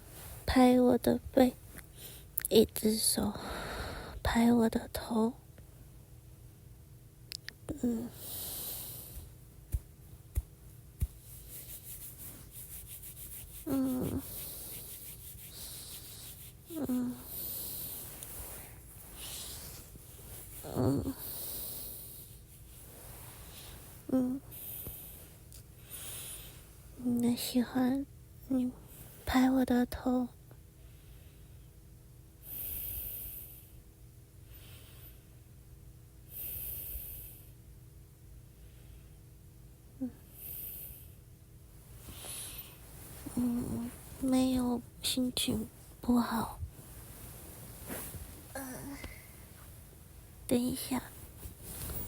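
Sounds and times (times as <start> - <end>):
soft rhythmic rubbing: 0.0 - 3.3, 7.7 - 30.3, 41.7 - 52.0
woman humming: 7.7 - 8.4, 13.7 - 14.4, 16.7 - 17.4, 20.6 - 21.2, 24.1 - 24.4, 43.3 - 43.9, 48.5 - 49.3.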